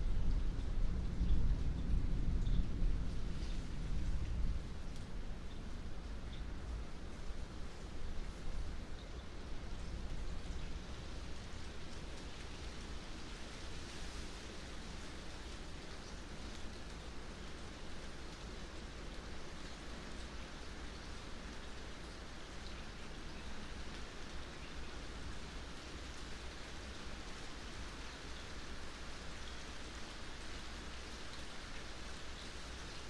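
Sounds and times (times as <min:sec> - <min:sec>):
steady rain hiss: 0:00.0 - 0:33.0
raindrop ticks: 0:00.2 - 0:10.8.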